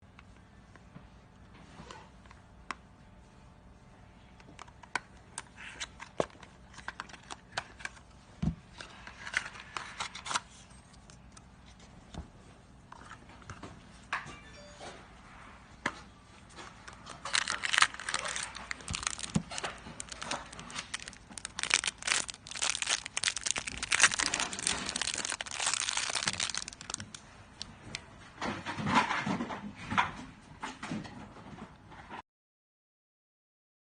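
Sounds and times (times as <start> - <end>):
packaging clicks and rustles: 16.6 - 28.0
packaging crinkling and tearing: 16.8 - 27.7.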